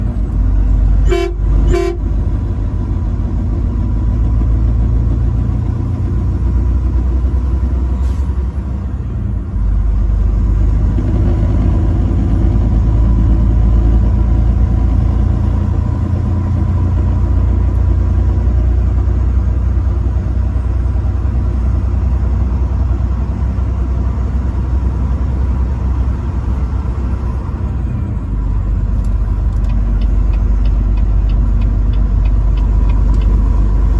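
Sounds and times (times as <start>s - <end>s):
road noise: 0.0s - 33.9s
truck engine rumble: 0.0s - 33.9s
truck horn blasts: 0.9s - 2.3s.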